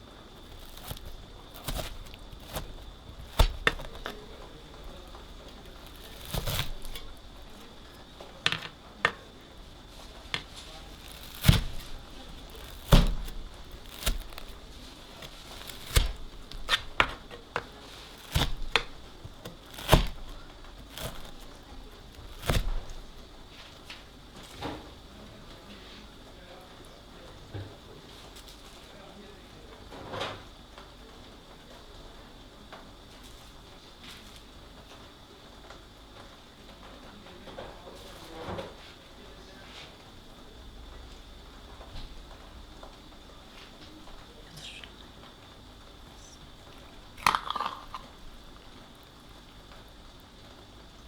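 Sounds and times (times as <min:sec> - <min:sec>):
faint high-pitched hum: 0:30.7 - 0:51.0.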